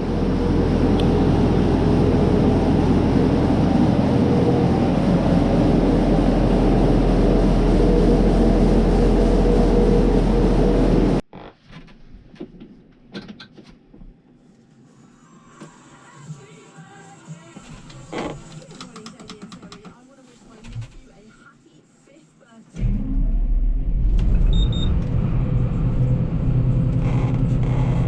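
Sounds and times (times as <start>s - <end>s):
heavy farm machinery running: 0.0s - 11.2s, 22.8s - 28.0s.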